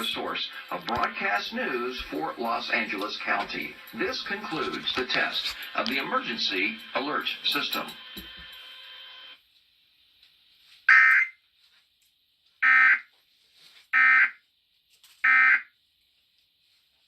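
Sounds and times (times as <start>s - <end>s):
harsh digital data bursts: 0.0s - 9.3s.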